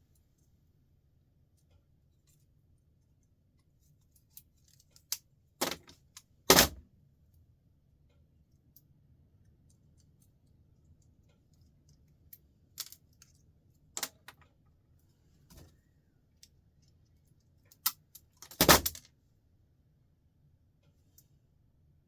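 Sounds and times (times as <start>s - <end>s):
small parts clicking and clinking: 3.2s - 6.4s, 8.5s - 14.8s, 16.3s - 19.1s.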